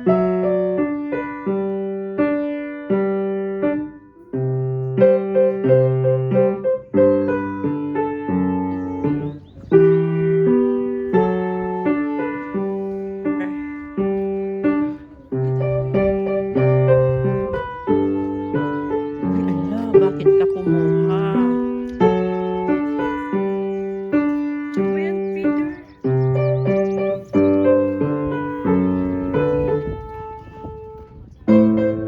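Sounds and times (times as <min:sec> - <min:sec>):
piano music: 0:00.0 - 0:32.0.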